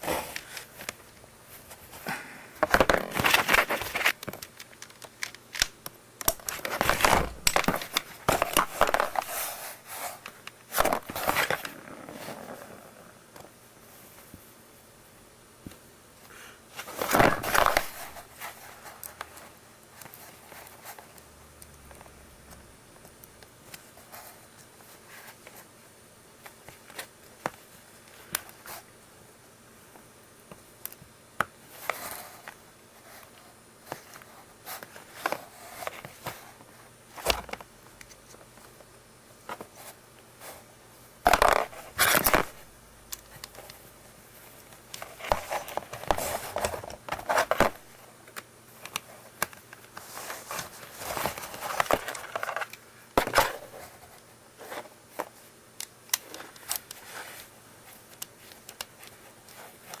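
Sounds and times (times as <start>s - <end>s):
scraping and rustling: 6.5s - 13.2s.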